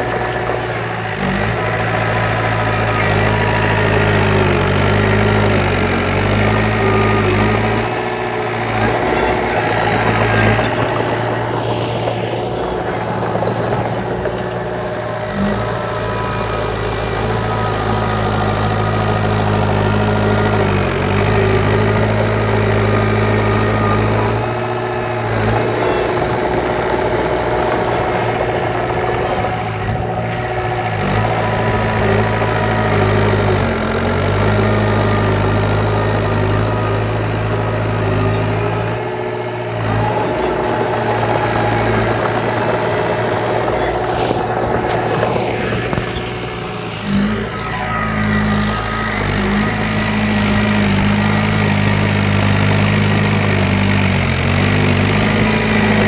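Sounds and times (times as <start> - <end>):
diesel engine of heavy machinery: 0.0 - 56.0.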